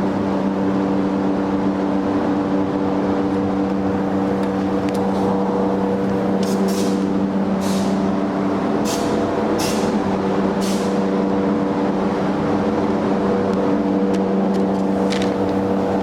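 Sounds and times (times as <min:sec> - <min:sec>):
machine hum: 0:03.6 - 0:07.6
bursts of hissing air: 0:04.1 - 0:08.1, 0:08.8 - 0:10.0, 0:10.6 - 0:11.0.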